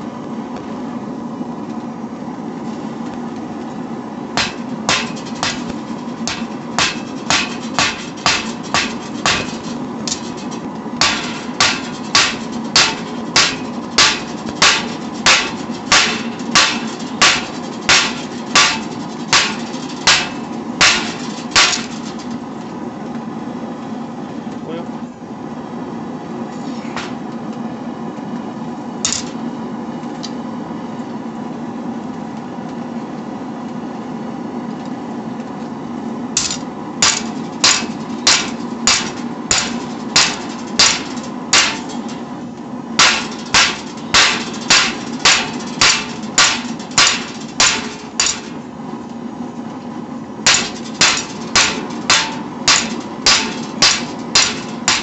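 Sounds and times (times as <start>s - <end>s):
forge humming: 0.0s - 55.0s
hammer striking hot steel on anvil: 4.4s - 22.3s, 26.6s - 27.2s, 29.0s - 29.4s, 36.4s - 42.2s, 43.0s - 48.6s, 50.4s - 55.0s.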